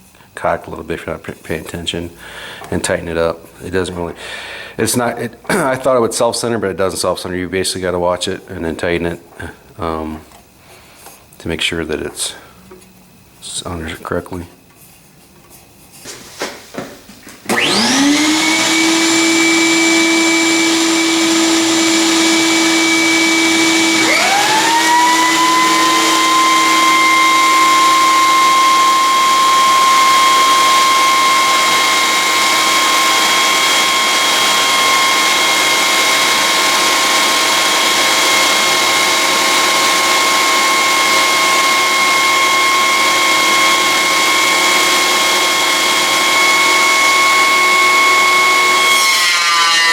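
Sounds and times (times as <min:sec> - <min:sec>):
shop machine whining: 0:16.1 - 0:49.9.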